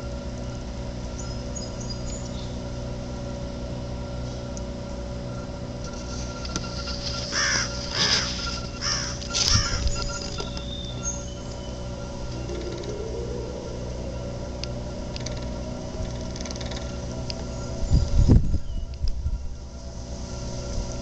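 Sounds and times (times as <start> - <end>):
pumping station hum: 0.0 - 21.0
crow cawing: 7.2 - 9.9.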